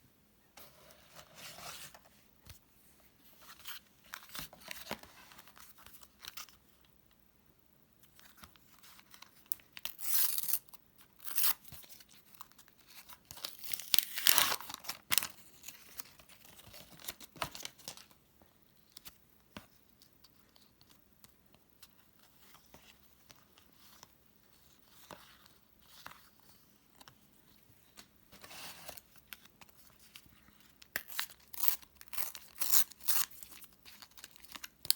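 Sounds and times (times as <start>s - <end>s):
sticker packets tearing and crinkling: 31.0s - 34.9s.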